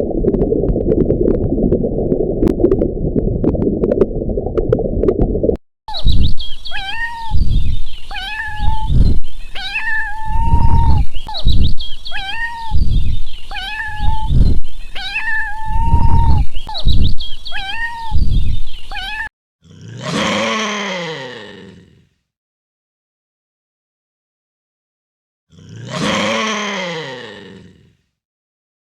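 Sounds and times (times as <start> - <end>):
cat meowing: 6.7 - 7.4, 8.1 - 8.9, 9.5 - 11.0, 12.1 - 12.8, 13.5 - 14.3, 14.9 - 16.4, 17.5 - 18.2, 18.9 - 19.3
groaning animal call: 19.6 - 22.1, 25.5 - 28.0.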